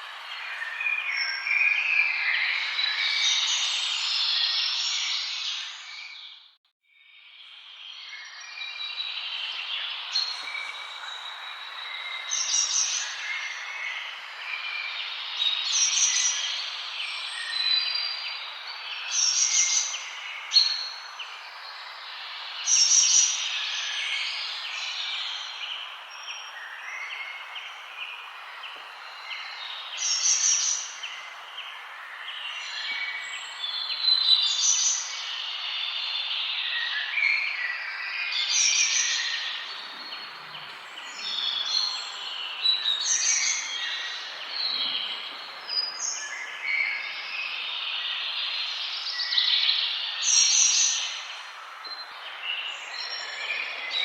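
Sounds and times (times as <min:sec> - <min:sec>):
songbirds chirping: 0:00.0 - 0:54.0.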